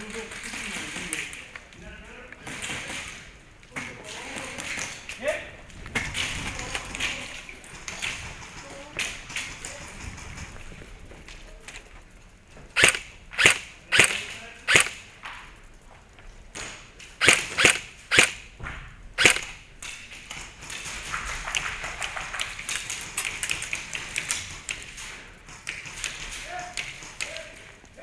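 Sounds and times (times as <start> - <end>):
airsoft gun shots: 12.8 - 15.0, 17.2 - 18.4, 19.2 - 19.6
fast faint clicks: 12.8 - 18.3, 19.2 - 28.0.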